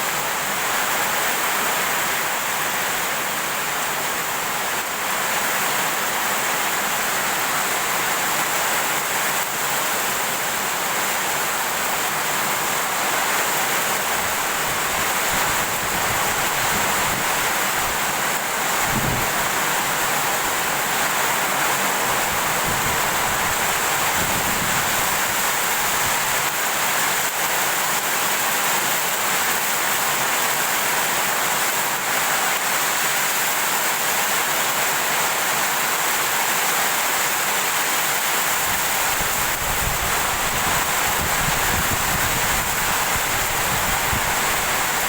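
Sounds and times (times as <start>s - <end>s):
heavy rain pouring: 0.0s - 45.0s
wind gusts buffeting microphone: 18.8s - 19.6s, 22.1s - 26.3s, 38.7s - 45.0s.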